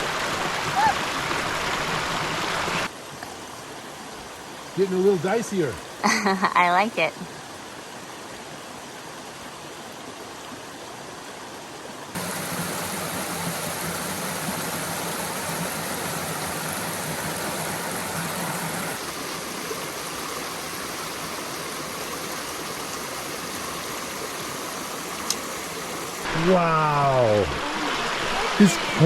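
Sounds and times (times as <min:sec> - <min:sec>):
water rushing over rocks: 0:00.0 - 0:06.0, 0:12.1 - 0:29.0.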